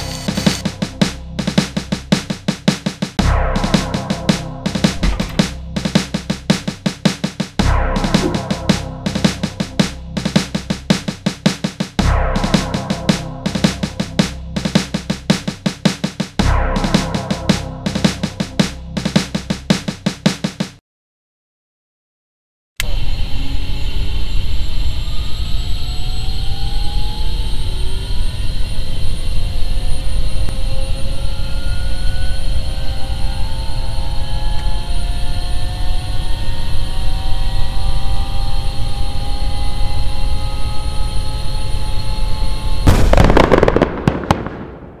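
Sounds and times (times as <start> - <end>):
loud steady mechanical noise: 0.0 - 3.1
loud burst: 0.0 - 20.1, 42.9 - 45.0
whines rising in pitch: 22.9 - 43.8.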